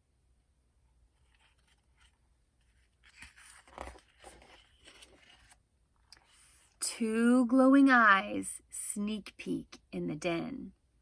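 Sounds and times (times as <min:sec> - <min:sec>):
book pages turning: 0:01.1 - 0:06.6.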